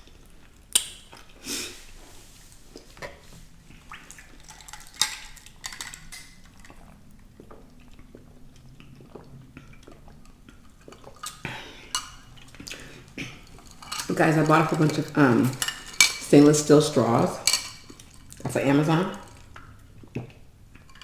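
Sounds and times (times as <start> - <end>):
dishes and utensils clinking: 4.4 - 6.7, 10.9 - 19.6, 20.8 - 21.0.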